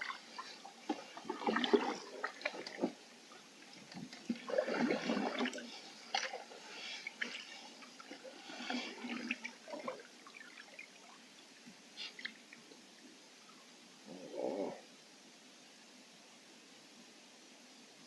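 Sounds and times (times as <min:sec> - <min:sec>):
paddle splashing in water: 0:00.0 - 0:03.0, 0:03.7 - 0:10.9.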